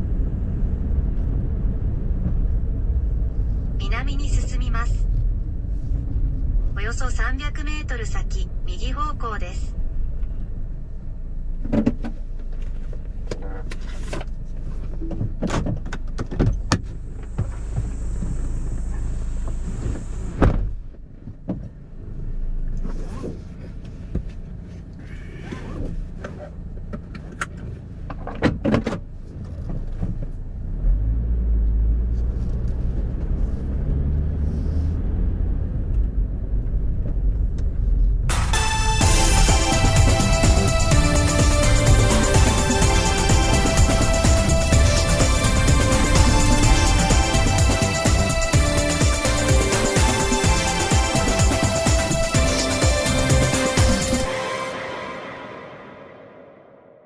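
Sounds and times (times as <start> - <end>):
car road and engine rumble: 0.0 - 56.7
high whine: 17.0 - 20.8, 38.3 - 57.0.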